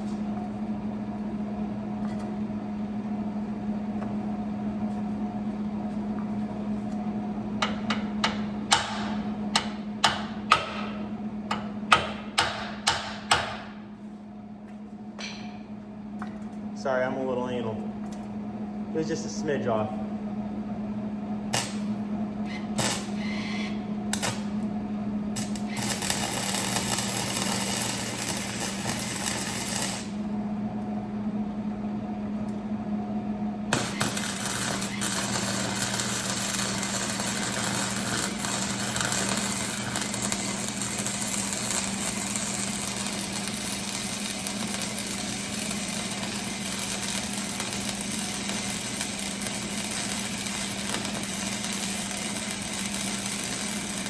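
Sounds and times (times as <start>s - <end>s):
steady low hum: 0.0s - 54.0s
arc welding crackling and buzzing: 21.5s - 31.0s, 33.7s - 54.0s.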